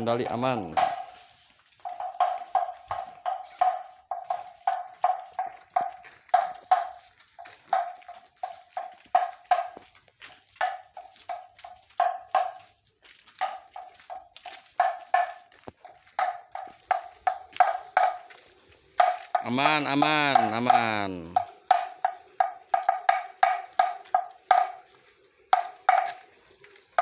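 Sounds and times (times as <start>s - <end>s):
bamboo slit drum hollow knocks: 0.0s - 1.2s, 1.9s - 7.0s, 14.8s - 15.5s, 16.2s - 18.3s, 19.0s - 24.8s, 25.5s - 26.2s.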